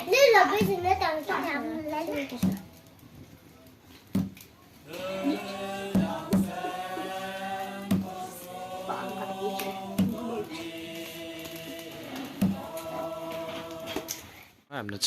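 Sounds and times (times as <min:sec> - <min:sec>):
voices chanting long notes: 0:04.8 - 0:14.5.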